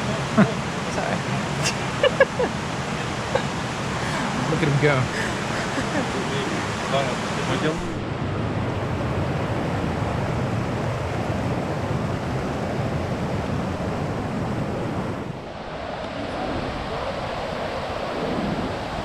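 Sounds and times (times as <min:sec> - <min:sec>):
waterfall rushing: 0:00.0 - 0:08.0.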